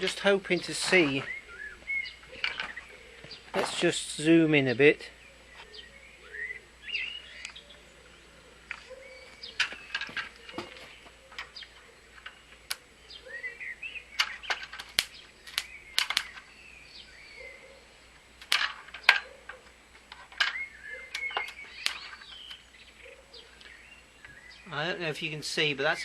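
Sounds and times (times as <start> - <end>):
birds chirping and singing: 0.0 - 26.0
low repeated cooing: 1.2 - 3.6, 5.2 - 16.5, 17.2 - 22.2, 22.9 - 24.4
sharp irregular clicks and taps: 14.2 - 16.4.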